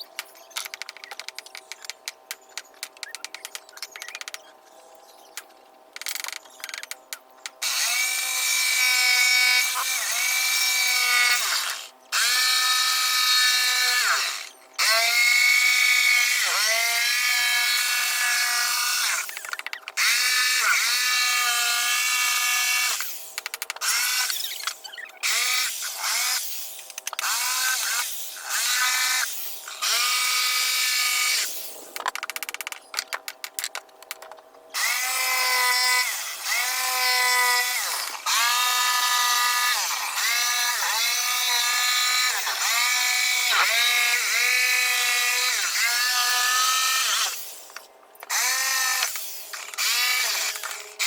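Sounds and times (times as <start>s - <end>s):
electric drill whining: 7.6s - 31.7s, 34.8s - 47.7s, 48.3s - 51.0s.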